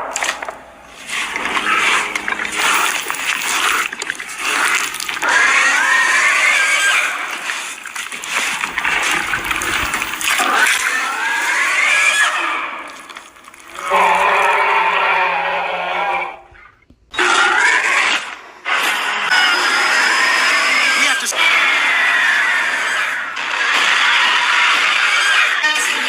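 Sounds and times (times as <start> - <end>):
reverberant monster screeches: 0.7 - 7.8, 8.5 - 13.1, 13.7 - 26.0.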